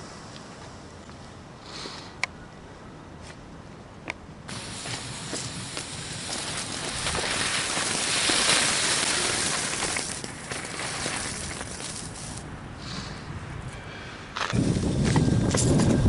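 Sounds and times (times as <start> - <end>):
fireworks hissing and crackling: 4.5 - 13.0, 14.6 - 16.0.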